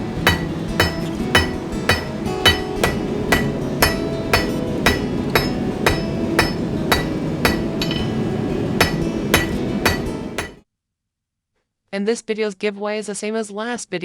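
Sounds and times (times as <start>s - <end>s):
hammer striking steel on anvil: 0.0s - 10.6s.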